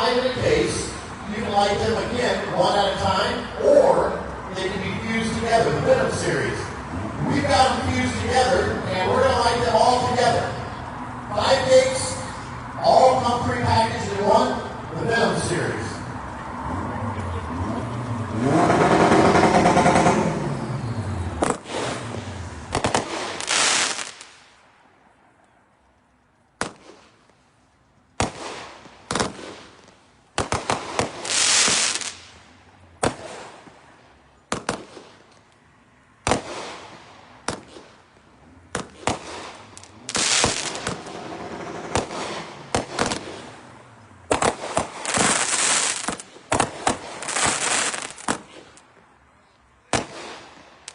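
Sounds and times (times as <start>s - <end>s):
crackling firework bursts: 21.4s - 24.7s, 26.6s - 27.5s, 28.1s - 35.4s, 36.2s - 38.1s, 38.7s - 48.9s, 49.9s - 50.9s
firework shots: 21.4s - 24.7s, 26.6s - 27.4s, 28.1s - 35.6s, 36.2s - 48.9s, 49.9s - 50.9s.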